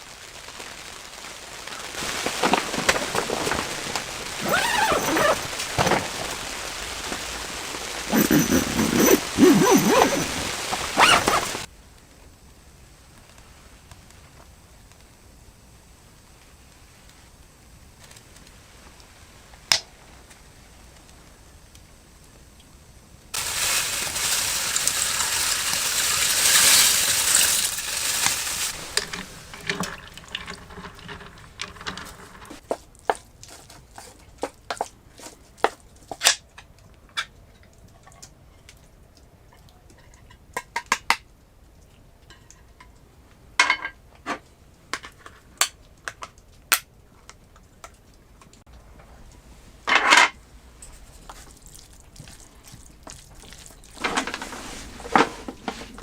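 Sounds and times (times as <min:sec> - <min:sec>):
loud hiss: 0:23.4 - 0:29.6
metal cookware clinking: 0:23.4 - 0:32.2.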